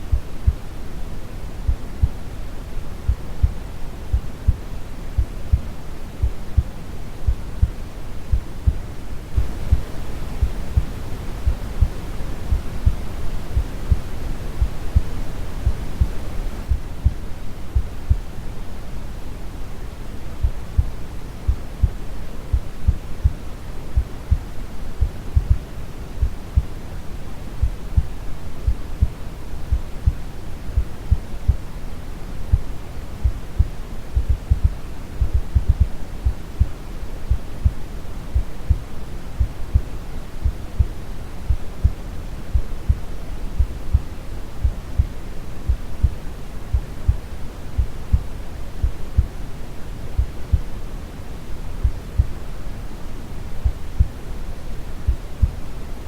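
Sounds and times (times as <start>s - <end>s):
brown noise rush: 0.0s - 56.0s
heartbeat thumps: 0.1s - 0.8s, 1.6s - 2.2s, 3.0s - 17.2s, 17.8s - 18.3s, 20.5s - 23.4s, 24.0s - 26.7s, 27.6s - 31.6s, 32.5s - 49.4s, 50.2s - 50.7s, 51.8s - 52.4s, 53.6s - 54.2s, 55.0s - 55.6s.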